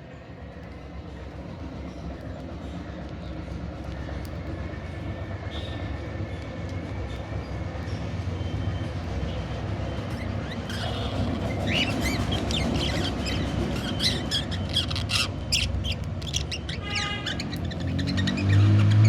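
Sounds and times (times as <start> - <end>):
budgerigars chirping and squawking: 10.2 - 19.0.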